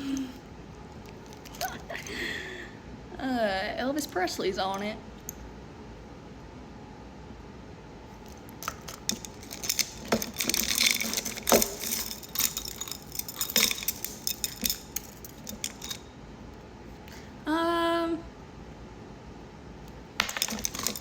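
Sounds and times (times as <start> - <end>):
metal watches clinking: 8.3 - 16.1, 20.2 - 21.0.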